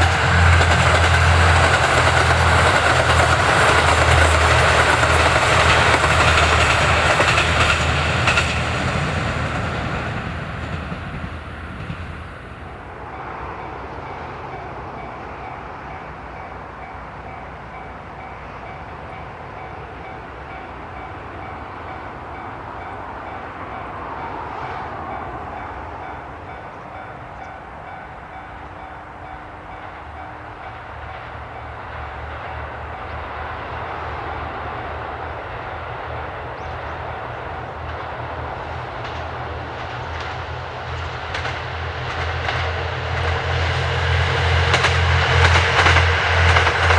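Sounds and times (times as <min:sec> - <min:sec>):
diesel railcar engine rumble: 0:00.0 - 0:46.9.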